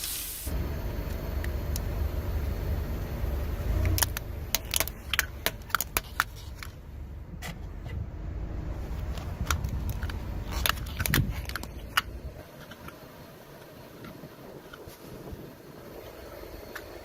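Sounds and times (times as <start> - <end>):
low engine rumble: 0.0 - 17.0
car tyre rolling over object: 0.1 - 17.0
object cracking and crunching: 3.9 - 6.8, 9.0 - 12.1.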